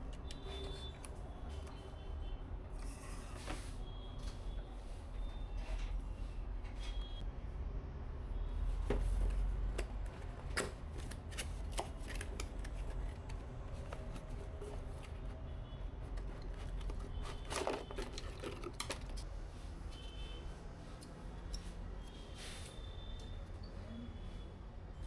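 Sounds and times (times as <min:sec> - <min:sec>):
clicks and taps of computer parts: 0:17.5 - 0:19.2.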